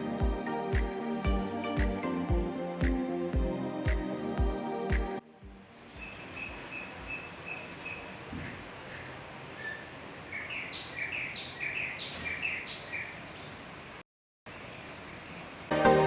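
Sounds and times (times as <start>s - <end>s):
outdoor hiss: 5.2s - 16.0s
birds chirping: 5.5s - 13.7s.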